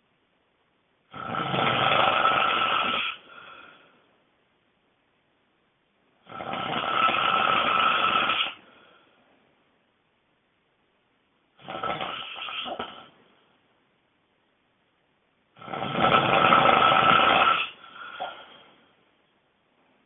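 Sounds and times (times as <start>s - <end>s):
person snoring loudly: 1.1s - 3.8s, 6.2s - 8.6s, 11.6s - 13.1s, 15.6s - 18.6s.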